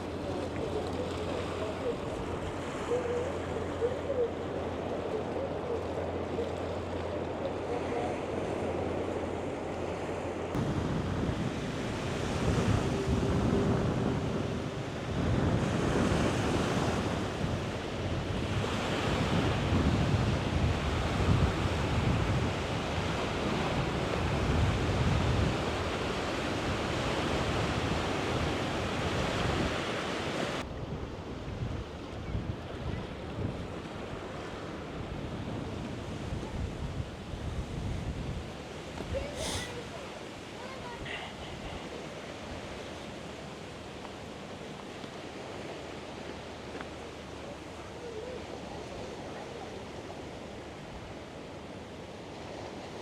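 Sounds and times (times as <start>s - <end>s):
wind buffeting microphone: 10.5s - 40.0s.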